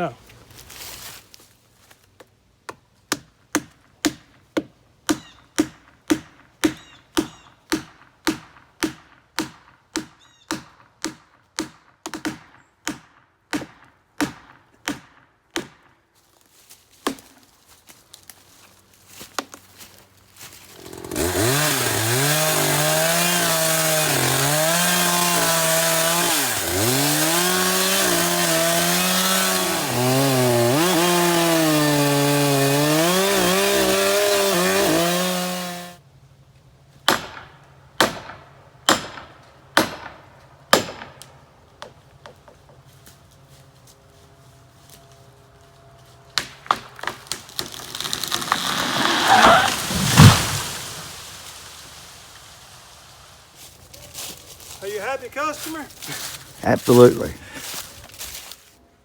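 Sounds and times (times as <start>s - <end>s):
chainsaw cutting tree trunk: 20.6s - 36.0s, 46.3s - 53.3s.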